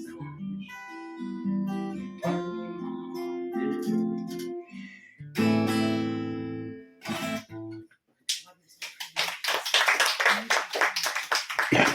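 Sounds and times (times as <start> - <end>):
acoustic guitars playing: 0.0 - 7.8
audience clapping: 8.3 - 11.9.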